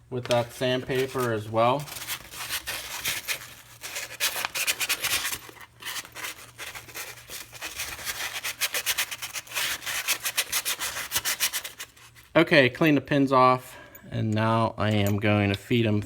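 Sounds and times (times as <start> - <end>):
sandpaper scratching on steel: 0.4 - 12.3.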